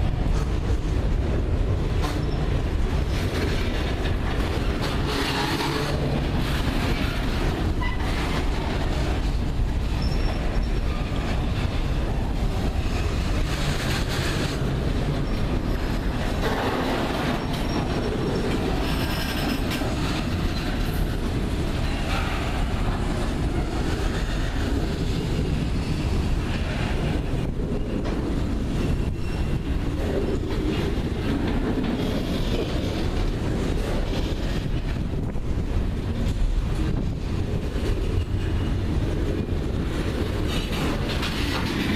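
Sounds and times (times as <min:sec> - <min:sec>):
freight train cars rumbling: 0:00.0 - 0:41.9
wheels clacking over rails: 0:00.0 - 0:41.9
high wheel squeals: 0:10.0 - 0:11.2.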